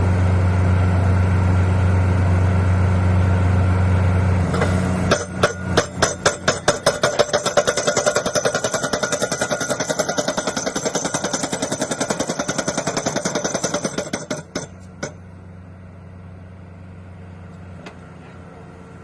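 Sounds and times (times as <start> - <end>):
machine engine hum: 0.0 - 13.0
pile driver hammer striking: 4.5 - 15.2.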